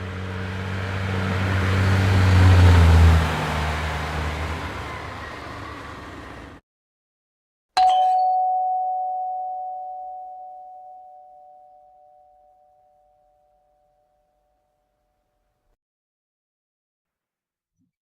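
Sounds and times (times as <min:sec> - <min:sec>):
bell-like chime: 0:07.8 - 0:14.3.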